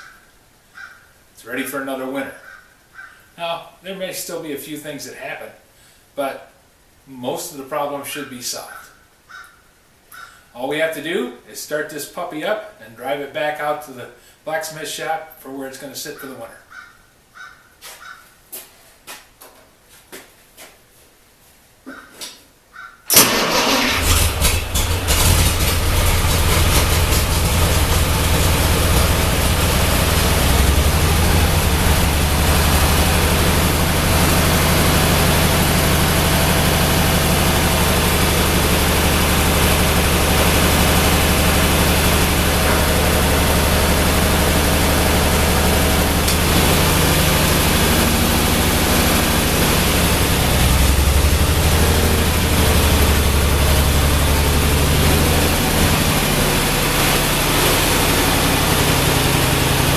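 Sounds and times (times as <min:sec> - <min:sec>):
tractor engine starting and idling: 0:23.1 - 0:59.9.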